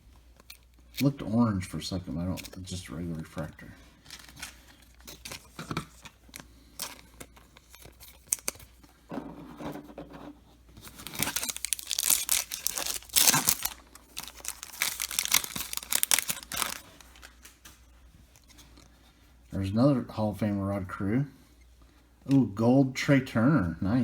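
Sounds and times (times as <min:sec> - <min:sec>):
foil wrapper tearing and crinkling: 0:02.4 - 0:08.7, 0:10.8 - 0:17.7.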